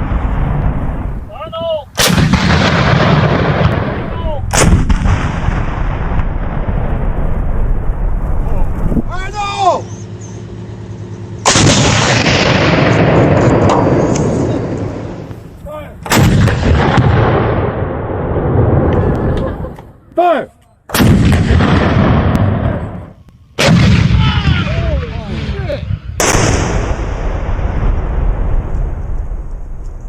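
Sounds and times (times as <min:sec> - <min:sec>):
anti-aircraft gun firing: 0:02.0 - 0:08.8, 0:11.4 - 0:15.4, 0:16.0 - 0:19.2, 0:20.9 - 0:30.0.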